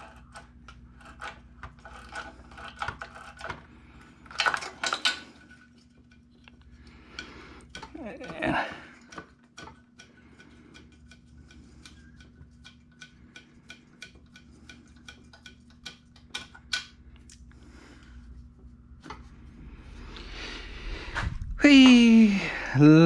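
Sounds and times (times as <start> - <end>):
faint steady hum: 0.0 - 23.0.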